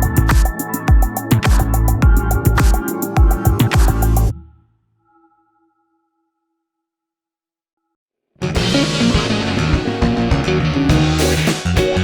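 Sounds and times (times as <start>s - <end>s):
electronic music with heavy beat: 0.0s - 4.3s, 8.6s - 12.0s.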